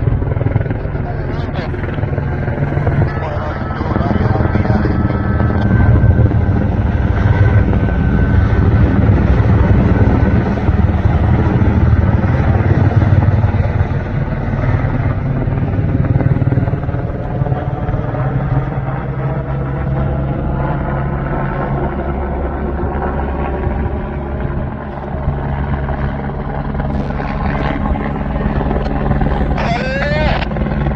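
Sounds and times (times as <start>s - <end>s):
helicopter rotor drone: 0.0s - 30.9s.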